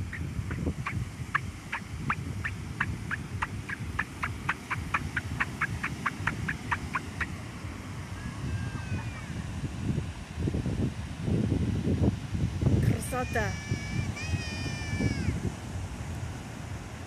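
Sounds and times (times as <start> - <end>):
low rumble of surf or wind: 0.0 - 17.0.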